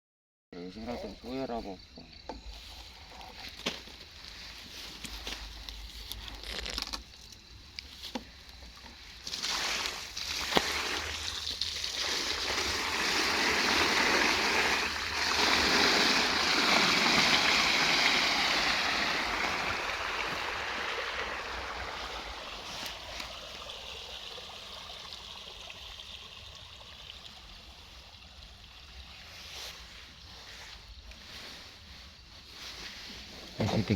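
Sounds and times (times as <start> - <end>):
rushing splashing water: 9.2 - 28.8.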